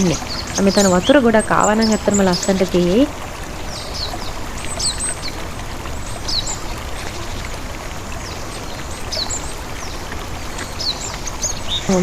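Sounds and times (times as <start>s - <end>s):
waterfall trickling: 0.0s - 12.0s.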